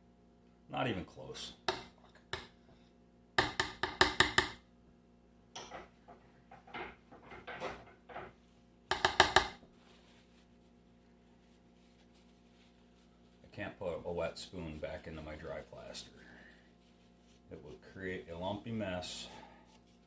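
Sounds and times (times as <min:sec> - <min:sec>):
spoon knocking against container: 0:08.9 - 0:09.6.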